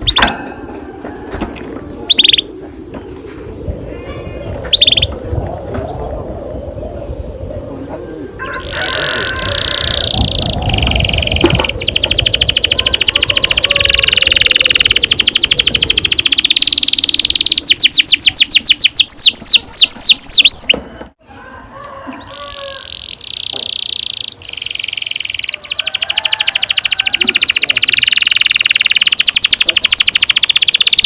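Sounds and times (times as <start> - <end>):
soft bird twitters: 0.0 - 0.4, 1.6 - 20.7, 22.8 - 31.0
canary singing trills: 0.0 - 0.5, 1.8 - 2.6, 3.5 - 5.2, 8.4 - 20.8, 22.6 - 31.0.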